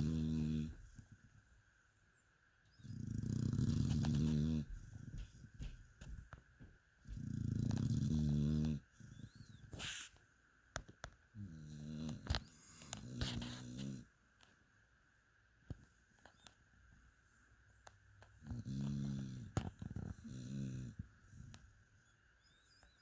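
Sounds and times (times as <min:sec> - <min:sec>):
dog snoring: 0:00.0 - 0:01.0, 0:02.7 - 0:05.8, 0:07.0 - 0:10.1, 0:11.4 - 0:14.1, 0:18.4 - 0:21.6
breathy hiss: 0:07.2 - 0:10.5, 0:11.4 - 0:14.2.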